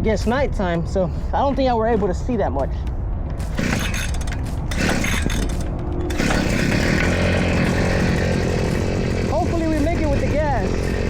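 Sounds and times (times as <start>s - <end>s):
diesel engine clattering: 3.3s - 11.0s.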